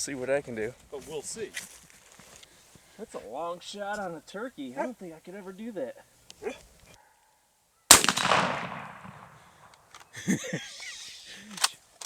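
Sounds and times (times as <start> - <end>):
shotgun shot echoing: 7.9 - 9.8.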